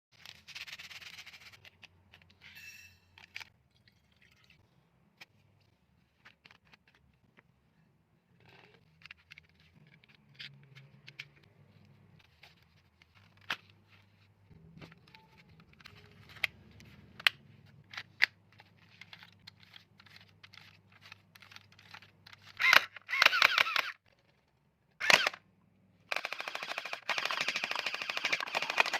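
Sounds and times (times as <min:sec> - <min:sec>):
toy blaster mechanical clicks: 0:22.5 - 0:24.0, 0:25.0 - 0:25.4, 0:26.1 - 0:28.9
toy blaster firing bursts: 0:22.6 - 0:24.0, 0:25.0 - 0:25.4, 0:26.1 - 0:28.9.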